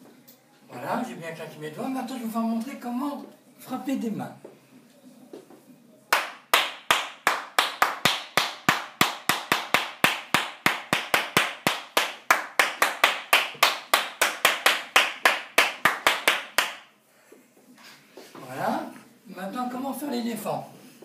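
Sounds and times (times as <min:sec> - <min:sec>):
person clapping hands: 0:06.1 - 0:16.9.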